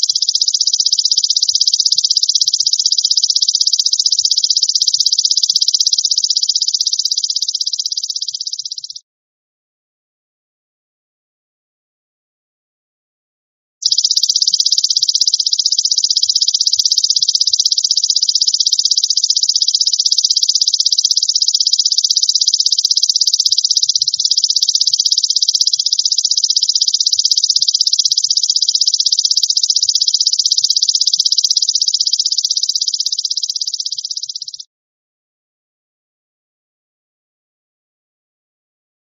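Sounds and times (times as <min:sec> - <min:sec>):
grasshopper buzzing trill: 0:13.8 - 0:34.6.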